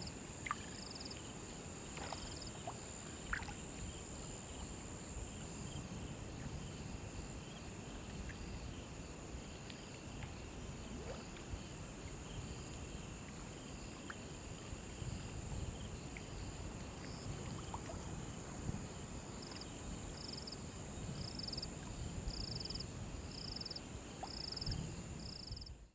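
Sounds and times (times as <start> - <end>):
crickets trilling: 0.0 - 25.8
nearby cricket chirping in pulses: 0.0 - 25.8
flowing water: 0.1 - 5.1, 9.4 - 20.2.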